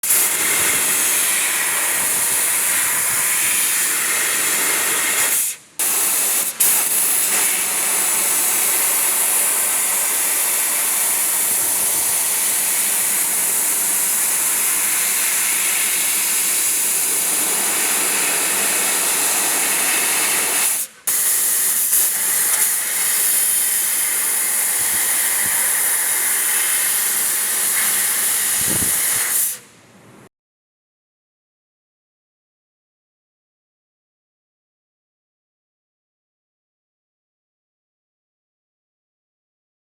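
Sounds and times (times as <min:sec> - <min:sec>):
laser cutter gas jet hiss: 0:00.0 - 0:29.7.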